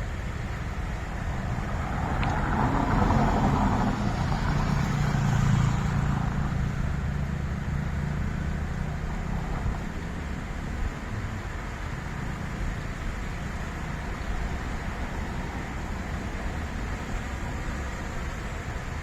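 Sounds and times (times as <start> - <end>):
traffic noise: 0.0 - 19.0
vehicle engine passing: 0.2 - 10.3.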